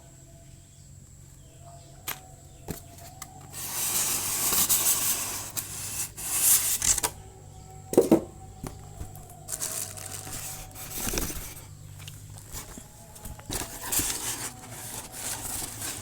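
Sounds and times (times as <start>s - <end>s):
packaging rustling and crinkling: 2.6s - 7.1s, 7.9s - 16.0s.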